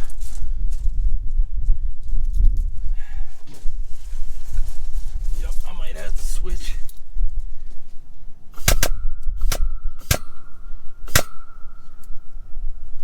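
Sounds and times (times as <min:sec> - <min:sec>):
ratchet metallic clicks: 0:08.6 - 0:12.2.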